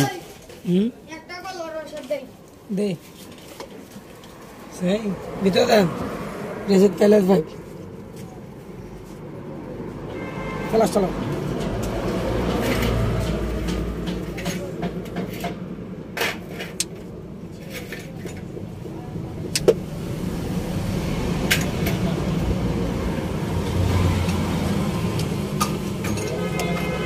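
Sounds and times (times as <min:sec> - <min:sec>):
vehicle engine humming: 0:04.0 - 0:27.0
tools clicking and knocking: 0:16.2 - 0:17.1.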